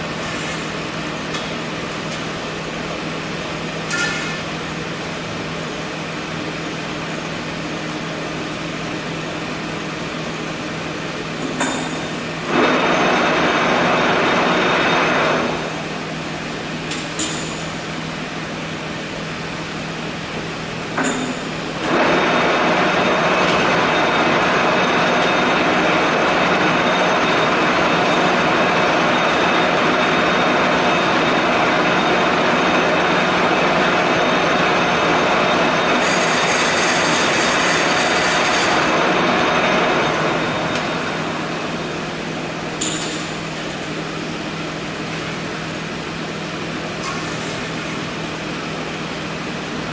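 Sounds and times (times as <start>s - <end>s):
low machine hum: 0.0s - 49.9s
factory machinery grinding: 11.3s - 16.2s, 20.9s - 44.0s.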